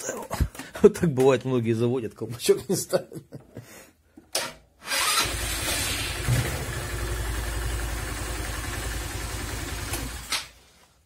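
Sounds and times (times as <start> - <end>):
scooter engine idling: 5.3 - 10.3.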